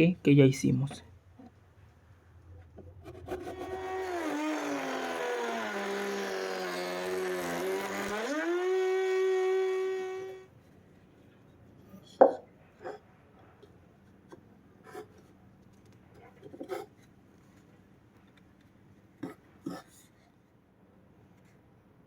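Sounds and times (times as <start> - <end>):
router whining: 3.2 - 10.5
wooden knock: 12.2 - 12.4.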